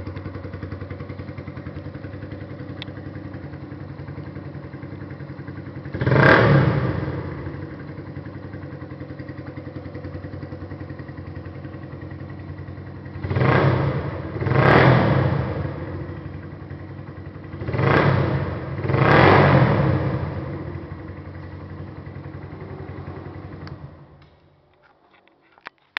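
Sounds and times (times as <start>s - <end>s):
motorcycle idling and revving: 0.0s - 25.9s.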